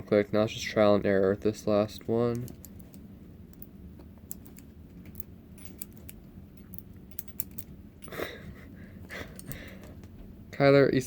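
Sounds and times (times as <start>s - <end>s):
padlock wheel clicking: 4.3s - 7.7s.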